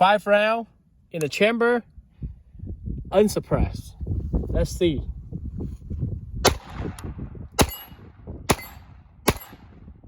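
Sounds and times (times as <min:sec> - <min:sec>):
gunshots with short echo: 0:06.4 - 0:09.8.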